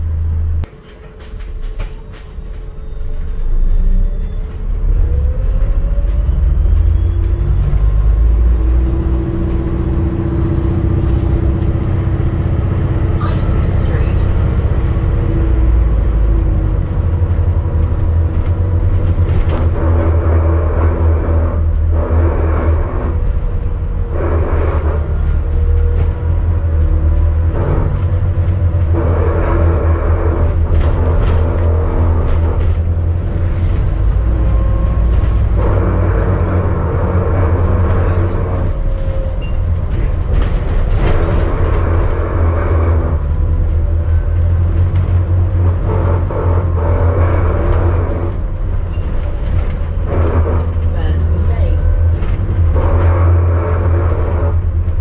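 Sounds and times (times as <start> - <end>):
bus interior rumble: 0.0 - 55.0
mid-range noise: 12.9 - 14.8.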